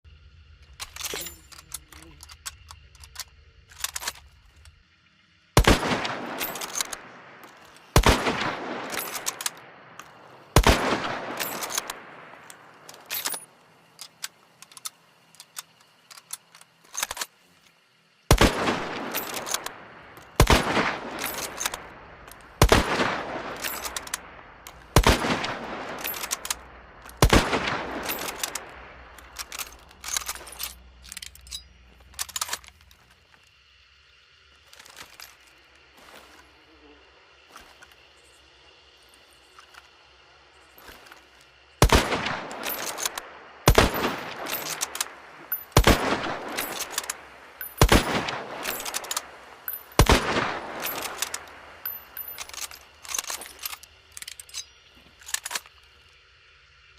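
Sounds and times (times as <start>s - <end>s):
rifle bolt clicks: 0.8s - 4.7s, 6.3s - 8.1s, 8.9s - 10.8s, 11.4s - 13.4s, 14.0s - 17.3s, 19.1s - 20.6s, 21.2s - 22.4s, 23.6s - 27.4s, 28.0s - 31.6s, 41.9s - 55.7s
rifle shots echoing: 5.6s - 13.4s, 18.3s - 30.6s, 41.8s - 52.8s.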